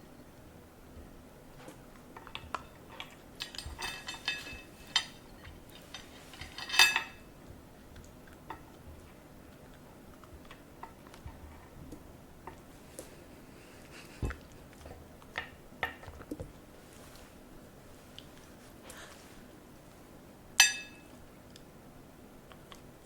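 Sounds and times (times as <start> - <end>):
kitchenware clinking and clattering: 2.2 - 7.3, 20.6 - 21.1.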